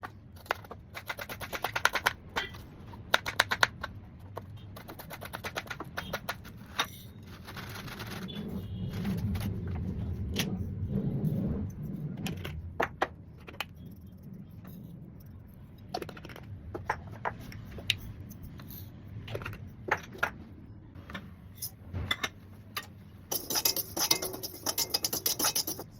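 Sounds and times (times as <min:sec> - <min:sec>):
low rumble: 0:08.6 - 0:16.0.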